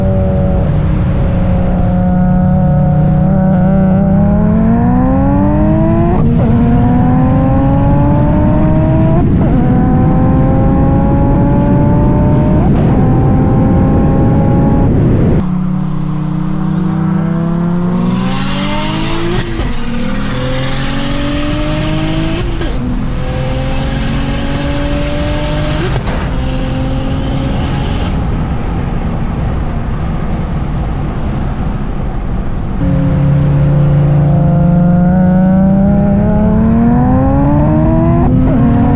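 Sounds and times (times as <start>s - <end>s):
car engine accelerating: 0.0s - 38.9s
loud rushing noise: 14.9s - 36.9s.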